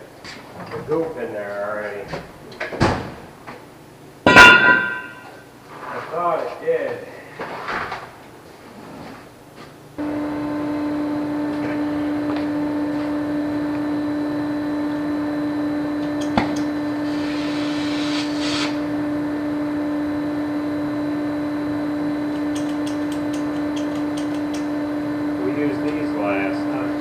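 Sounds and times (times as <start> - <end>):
heating tool humming: 10.0 - 27.0
sharp click: 22.3 - 24.7.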